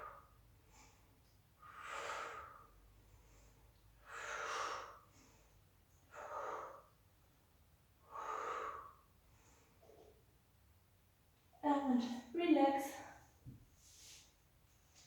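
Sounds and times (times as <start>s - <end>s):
woman breathing deeply: 0.0s - 7.0s, 8.0s - 10.0s.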